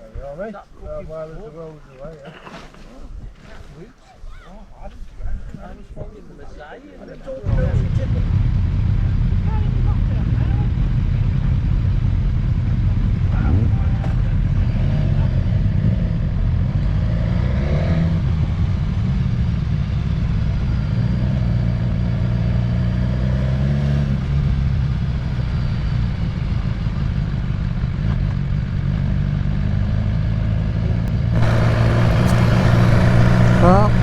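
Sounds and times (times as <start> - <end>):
motorcycle engine running: 7.5 - 34.0.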